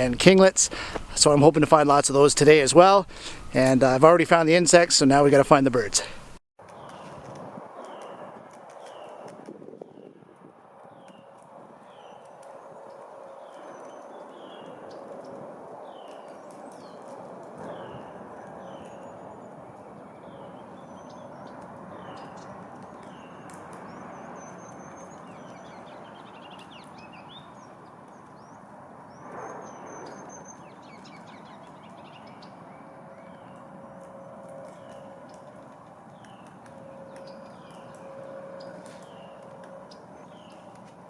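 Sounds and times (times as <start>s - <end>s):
birds giving high notes and trills: 36.1s - 40.9s.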